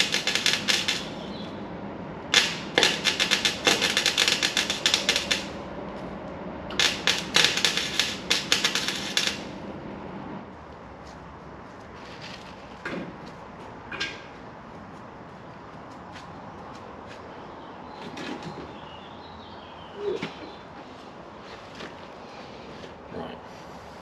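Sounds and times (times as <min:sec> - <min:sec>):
mig welder crackling: 0:00.0 - 0:01.6, 0:02.2 - 0:09.8.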